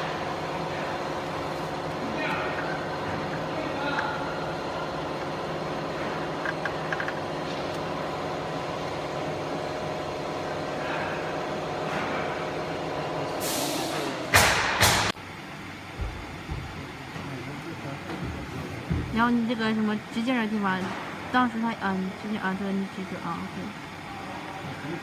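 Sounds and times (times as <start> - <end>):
electrical machine hum: 0.0 - 25.0
loud hissing bursts: 13.4 - 15.1.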